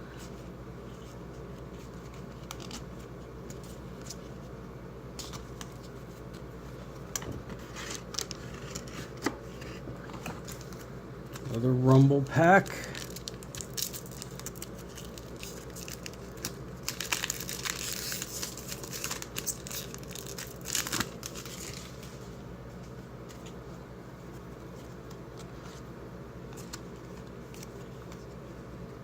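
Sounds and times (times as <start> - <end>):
faint steady hum: 0.0 - 29.0
wrapper tearing and crinkling: 12.8 - 22.1.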